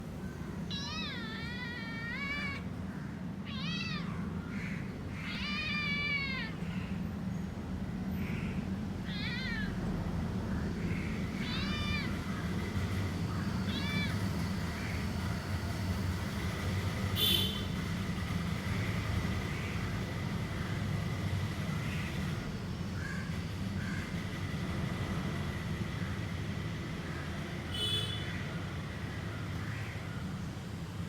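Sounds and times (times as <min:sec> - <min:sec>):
cat meowing: 0:00.6 - 0:02.8, 0:03.4 - 0:07.0, 0:09.0 - 0:09.9, 0:10.9 - 0:12.6, 0:13.2 - 0:15.1.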